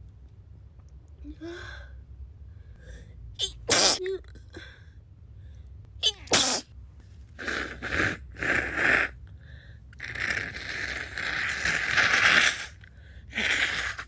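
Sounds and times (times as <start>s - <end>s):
sneeze: 3.4s - 4.1s, 6.0s - 6.7s, 10.5s - 12.8s, 13.4s - 14.0s
person blowing nose: 3.7s - 4.0s, 6.3s - 6.6s, 7.4s - 9.1s, 10.0s - 14.0s
person sniffing: 6.3s - 6.6s, 7.4s - 9.2s, 10.0s - 14.0s.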